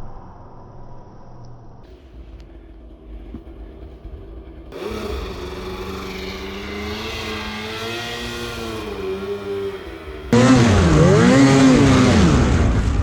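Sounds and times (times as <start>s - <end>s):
snowmobile engine revving: 4.7s - 13.0s.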